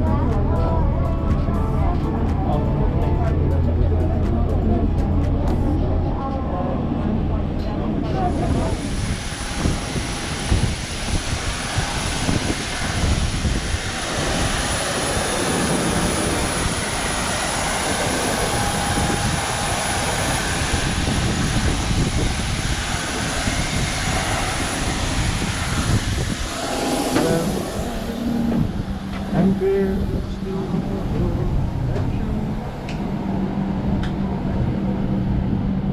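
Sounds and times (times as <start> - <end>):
faint high whine: 6.0 - 35.9
jet aircraft rushing hiss: 8.0 - 35.9.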